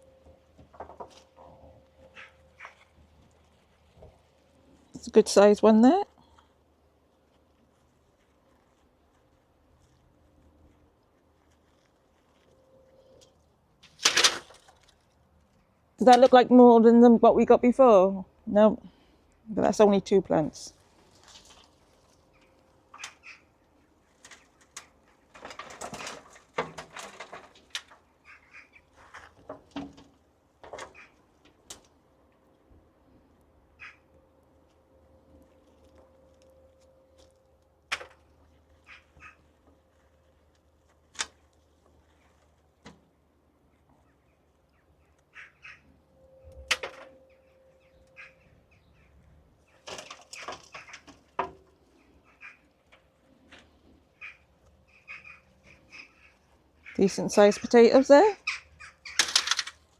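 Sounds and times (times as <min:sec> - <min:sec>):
soil and potatoes rustling: 0:00.0 - 0:18.0, 0:18.6 - 0:45.8, 0:47.9 - 0:59.9
bird calling: 0:02.0 - 0:03.0, 0:22.3 - 0:23.6, 0:28.2 - 0:28.9, 0:33.8 - 0:34.1, 0:38.8 - 0:39.6, 0:44.0 - 0:51.1, 0:51.9 - 0:52.9, 0:53.6 - 0:59.4.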